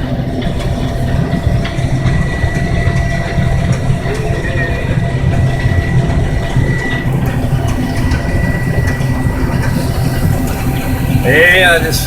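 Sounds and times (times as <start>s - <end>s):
combine engine hum: 0.0s - 12.0s
high whine: 0.0s - 12.0s.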